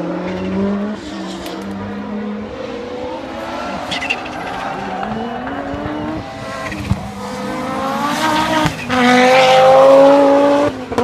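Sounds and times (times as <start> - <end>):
rally car engine at full throttle: 0.0 - 11.0.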